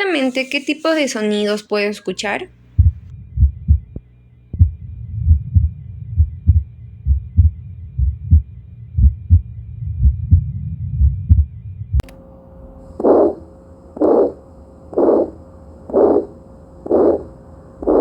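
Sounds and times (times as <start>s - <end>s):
heartbeat through a stethoscope: 2.8s - 12.0s, 15.0s - 15.3s, 15.9s - 16.3s, 16.9s - 18.0s.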